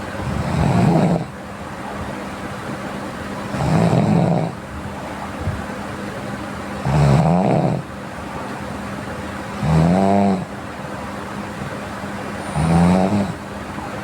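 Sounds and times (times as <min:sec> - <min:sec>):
person snoring: 0:00.3 - 0:01.3, 0:03.6 - 0:04.6, 0:06.8 - 0:07.8, 0:09.6 - 0:10.5, 0:12.5 - 0:13.4.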